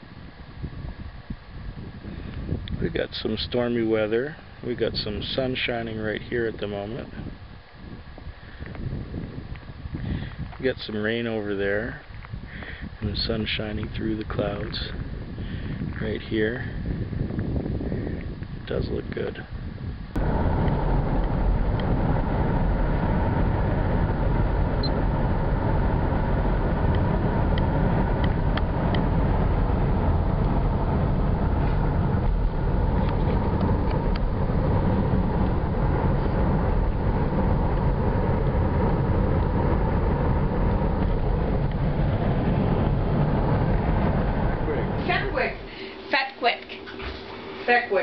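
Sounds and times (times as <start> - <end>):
car interior road and engine noise: 20.1 - 45.6.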